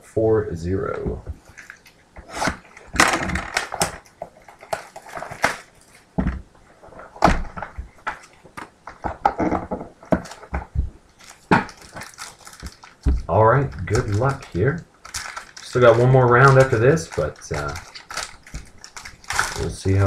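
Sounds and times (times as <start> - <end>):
cards rustling and scraping: 1.4 - 6.1.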